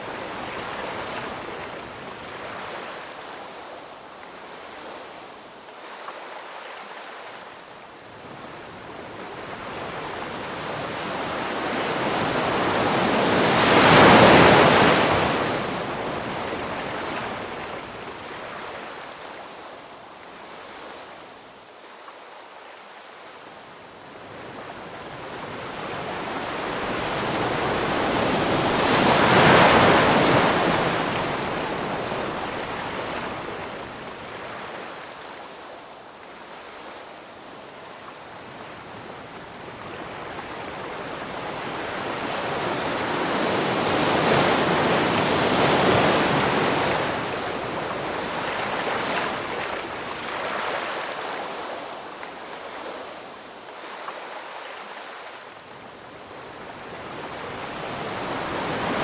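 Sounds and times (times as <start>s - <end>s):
ocean waves breaking: 26.0s - 35.0s.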